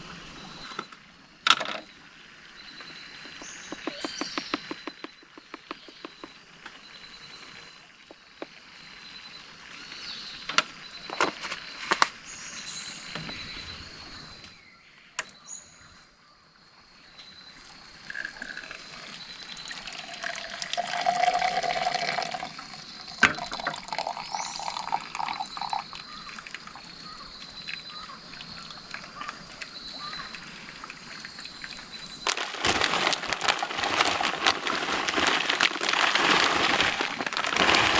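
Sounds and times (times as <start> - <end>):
water sloshing and trickling: 17.6 - 37.9.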